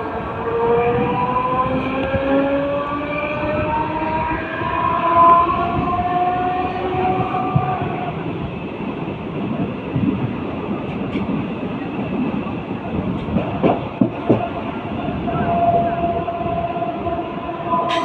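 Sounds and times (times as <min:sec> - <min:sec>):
train wheels rumbling on track: 0:00.0 - 0:18.0
train horn: 0:15.1 - 0:18.0.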